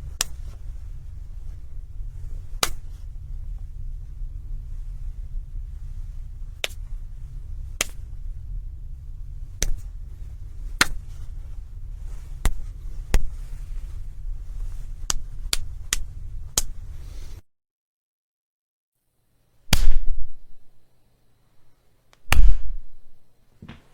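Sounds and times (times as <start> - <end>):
steady low hum: 0.0 - 17.4
sharp slaps: 0.1 - 0.6, 2.5 - 3.0, 6.6 - 6.9, 7.8 - 8.0, 9.6 - 9.9, 10.8 - 11.2, 15.1 - 16.8, 19.7 - 20.3, 22.3 - 22.8.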